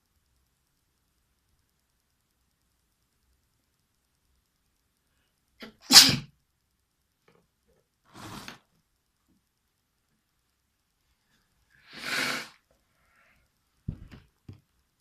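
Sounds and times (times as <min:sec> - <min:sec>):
person sneezing loudly: 0:05.6 - 0:06.3
short intake of breath: 0:11.8 - 0:12.6.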